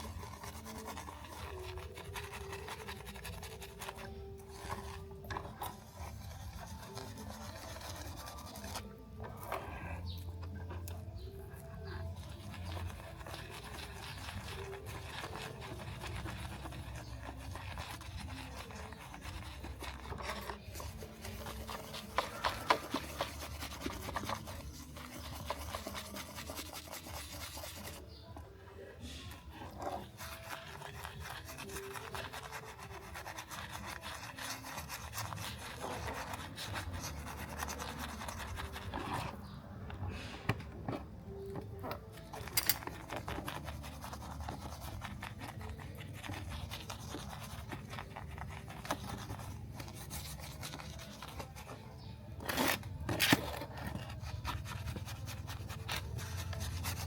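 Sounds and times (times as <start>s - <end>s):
scratchy hand rubbing: 0.0s - 57.0s.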